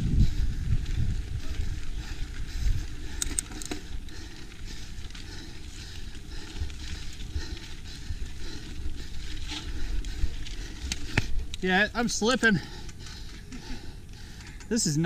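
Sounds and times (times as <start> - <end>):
wind rumble on microphone: 0.0 - 5.4
bike clicks and rattles: 0.0 - 15.0
bike tyre noise on dirt: 0.0 - 15.0.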